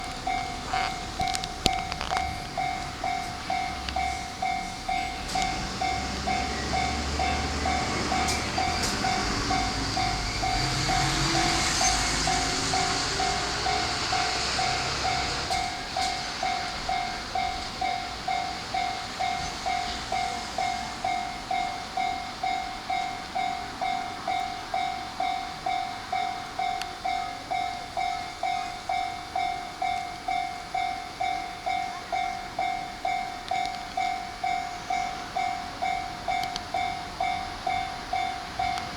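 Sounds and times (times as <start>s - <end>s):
traction motor whine: 0.0s - 21.2s
electric train rumble: 0.0s - 38.9s
level crossing warning bell: 0.0s - 38.9s.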